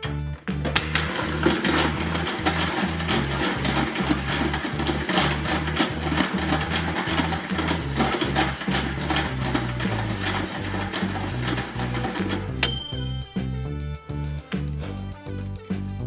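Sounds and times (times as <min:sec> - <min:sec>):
background music with bass line: 0:00.0 - 0:16.0
toy motor whirring and rattling: 0:00.9 - 0:13.4.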